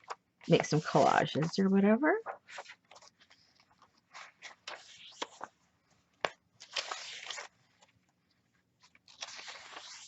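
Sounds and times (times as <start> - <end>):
paper pages rustling: 0.0 - 10.0.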